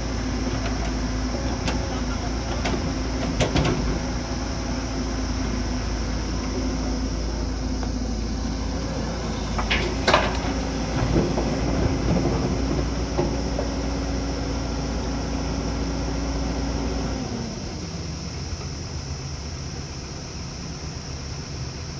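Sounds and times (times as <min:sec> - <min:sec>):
diesel machine engine running: 0:00.0 - 0:21.9
metal clanks: 0:09.3 - 0:14.0.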